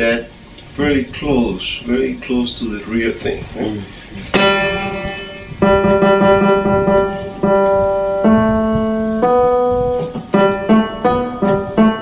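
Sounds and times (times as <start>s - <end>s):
piano single notes: 4.3s - 12.0s.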